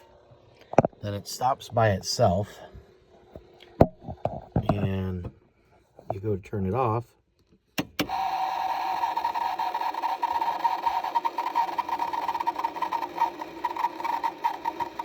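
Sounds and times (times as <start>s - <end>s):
small electric motor whirring: 8.0s - 15.0s.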